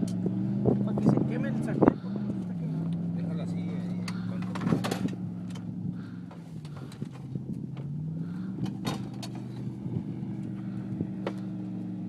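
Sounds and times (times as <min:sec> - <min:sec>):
engine running at low speed: 0:00.0 - 0:12.0.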